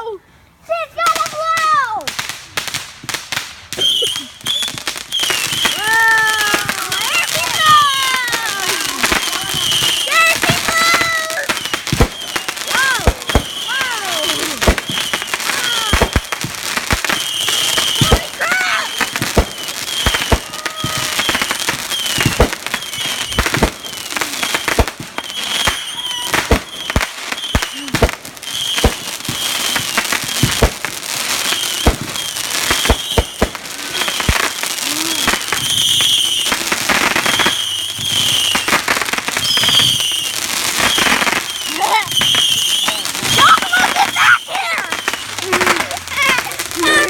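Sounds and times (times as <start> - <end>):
fireworks bangs and pops: 0.8 - 47.0
fireworks high-pitched chirps: 3.7 - 47.0.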